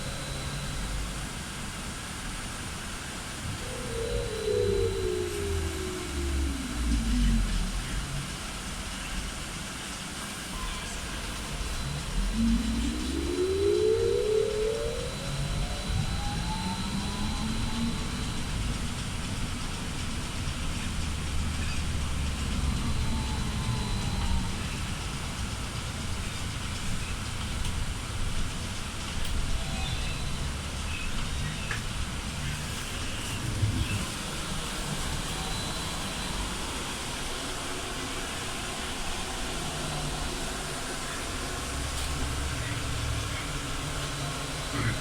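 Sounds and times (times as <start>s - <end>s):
faint electric motor whine: 0.0s - 45.0s
low rumble of bus running gear: 0.0s - 45.0s.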